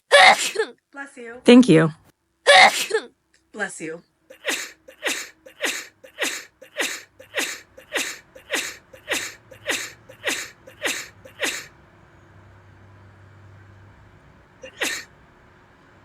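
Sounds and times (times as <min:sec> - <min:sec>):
person sneezing: 0:00.1 - 0:00.7, 0:02.5 - 0:03.1, 0:04.3 - 0:11.7, 0:14.7 - 0:15.0.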